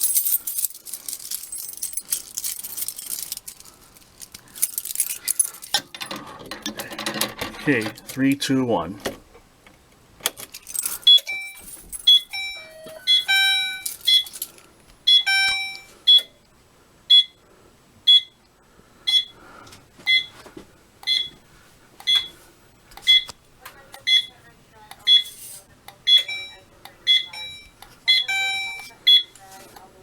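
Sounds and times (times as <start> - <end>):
fire alarm beeping: 11.0 - 14.3, 15.1 - 16.4, 17.1 - 17.4, 18.1 - 18.4, 19.1 - 19.4, 20.1 - 20.4, 21.0 - 21.4, 22.0 - 22.4, 23.0 - 23.3, 24.0 - 24.4, 25.0 - 25.4, 26.0 - 29.4
clicks of an alarm key station: 21.0 - 21.4, 22.0 - 22.3, 23.0 - 24.3, 24.9 - 29.9.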